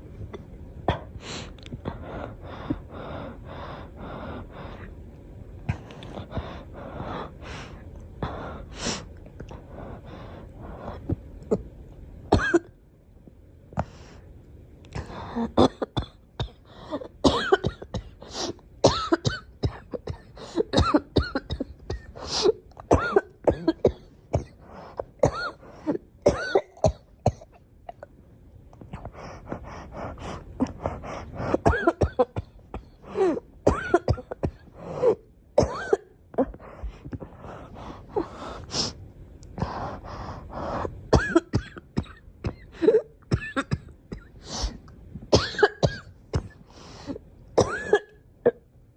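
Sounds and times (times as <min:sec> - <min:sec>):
girl coughing: 0:12.3 - 0:12.7, 0:15.4 - 0:16.6, 0:17.2 - 0:18.2, 0:18.8 - 0:24.6, 0:25.2 - 0:25.6, 0:26.3 - 0:27.6, 0:31.5 - 0:34.7, 0:35.6 - 0:36.6, 0:41.1 - 0:44.3, 0:45.3 - 0:46.6, 0:47.6 - 0:48.2.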